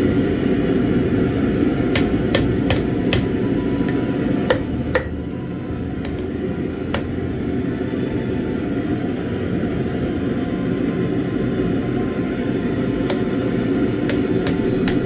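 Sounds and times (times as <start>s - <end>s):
hammer taps on metal: 2.0s - 5.2s, 6.0s - 6.3s.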